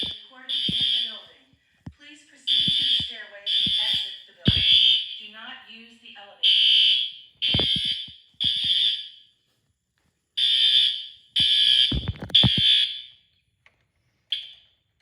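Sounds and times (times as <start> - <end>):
fire alarm horn blasts: 0.0 - 1.4, 2.4 - 5.3, 6.4 - 9.3, 10.4 - 13.2.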